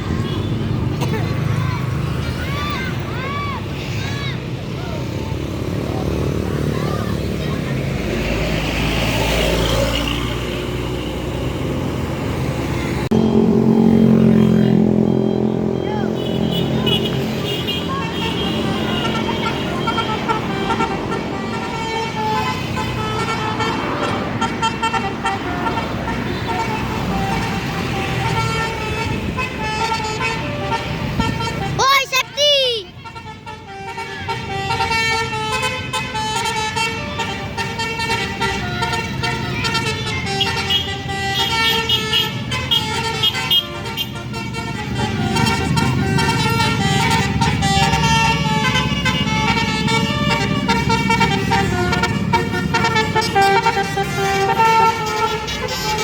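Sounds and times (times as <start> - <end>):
bus engine and road noise: 0.0 - 56.0
bus musical horn tune: 13.0 - 56.0.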